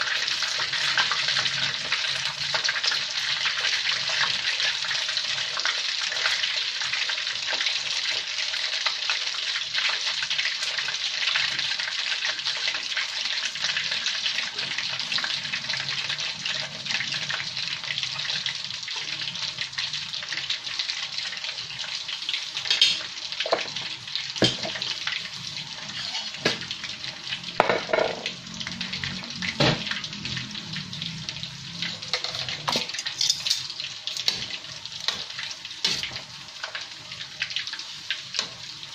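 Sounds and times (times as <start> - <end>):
chicken frying in oil: 0.0 - 38.9
utensil clinking against pan: 32.2 - 34.3.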